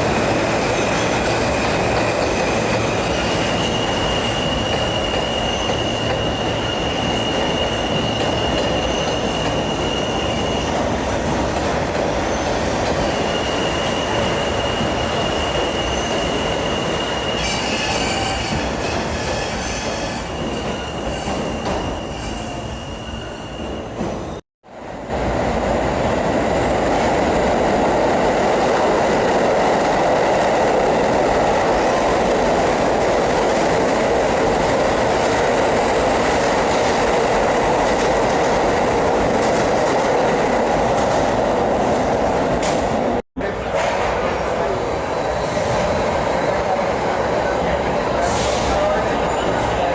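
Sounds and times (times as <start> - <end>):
subway train rumble: 0.0 - 49.9
high wheel squeal: 12.2 - 24.4.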